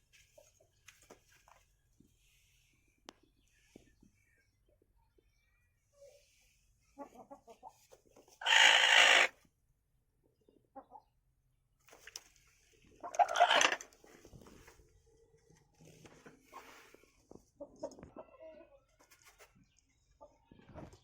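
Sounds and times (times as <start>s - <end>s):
chickens clucking softly: 3.1s - 9.3s, 10.2s - 11.4s, 12.0s - 21.0s
chicken squawks: 8.4s - 9.4s, 13.0s - 13.8s.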